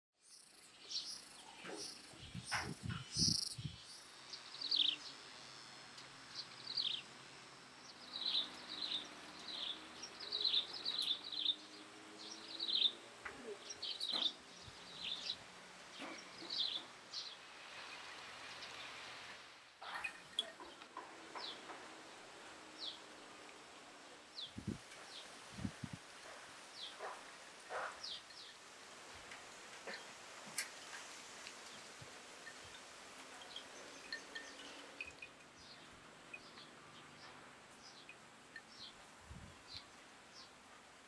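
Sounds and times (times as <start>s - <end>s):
bird chirping: 0.2s - 5.2s, 7.9s - 17.4s.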